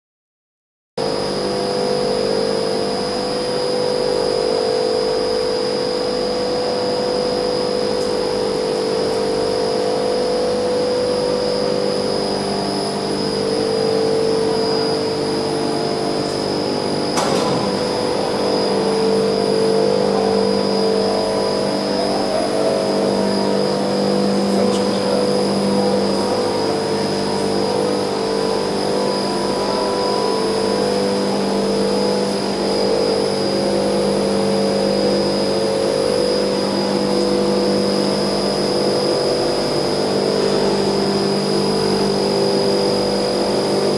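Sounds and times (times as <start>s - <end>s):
faint high whine: 1.0s - 43.9s
heat pump humming: 1.0s - 43.9s
sharp click: 17.2s - 17.9s.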